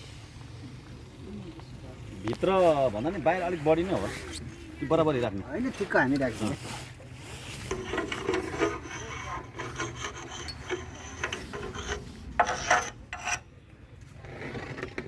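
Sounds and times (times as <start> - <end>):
stone scraping and rubbing: 7.6 - 13.5.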